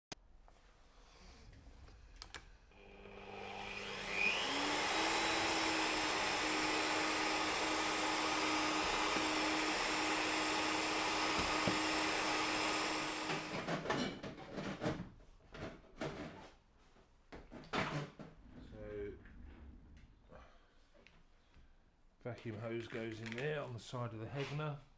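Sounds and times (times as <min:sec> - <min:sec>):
shop vacuum running: 0:02.7 - 0:13.8.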